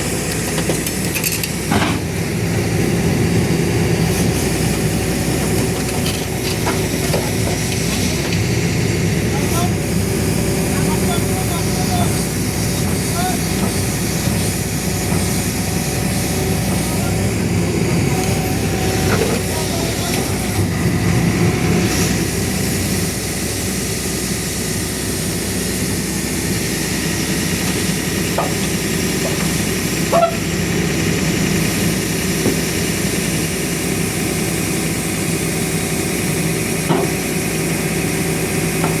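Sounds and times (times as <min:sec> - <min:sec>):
excavator diesel engine running: 0:00.0 - 0:39.0.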